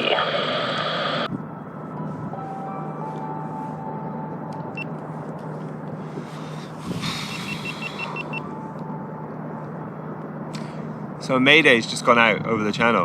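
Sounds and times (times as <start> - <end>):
radio hiss with low hum: 0.0 - 1.3
short high beeps: 7.3 - 8.5.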